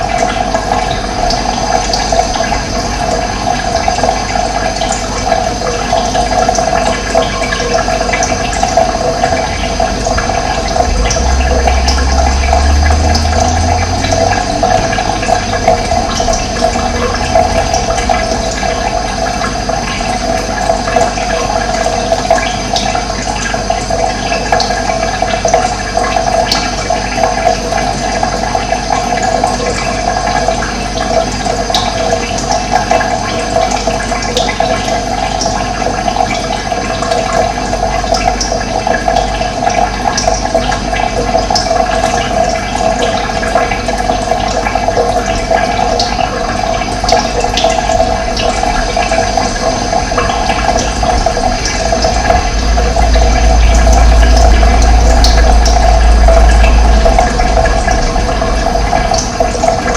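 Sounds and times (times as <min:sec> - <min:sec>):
running water flowing: 0:00.0 - 0:59.9
low rumble: 0:08.2 - 0:22.9, 0:43.3 - 0:59.9.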